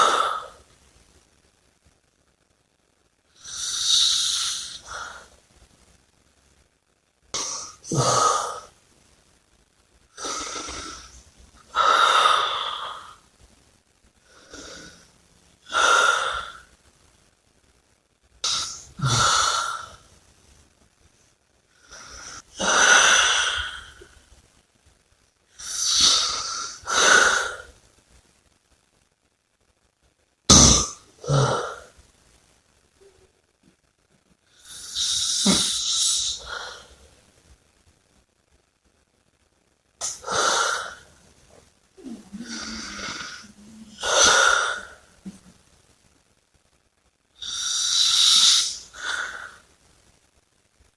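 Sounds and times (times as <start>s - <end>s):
person breathing heavily: 10.2s - 13.2s, 40.0s - 41.2s, 42.0s - 45.4s.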